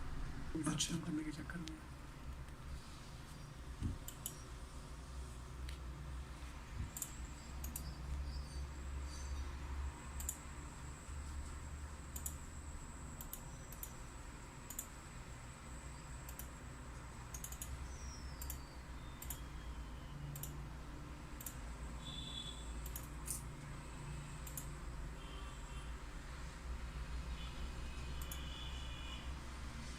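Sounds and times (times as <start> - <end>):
computer mouse clicking: 3.8 - 4.4, 6.9 - 8.0, 10.2 - 10.5, 11.4 - 12.4, 13.2 - 14.0, 14.6 - 14.9, 16.2 - 16.6, 17.3 - 19.5, 20.3 - 20.6, 21.4 - 21.6, 22.8 - 23.5, 24.4 - 24.8, 28.2 - 28.6.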